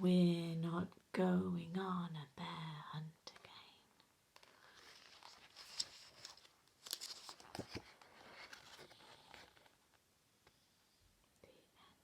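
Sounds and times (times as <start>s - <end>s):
faint rustling and handling noise: 3.1s - 12.0s.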